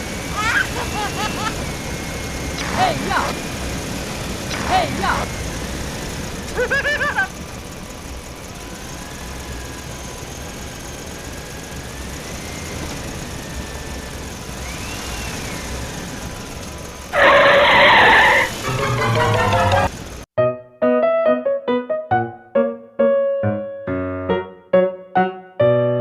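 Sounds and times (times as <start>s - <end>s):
toy vehicle engine rumbling: 0.0s - 20.3s
music: 18.6s - 26.0s.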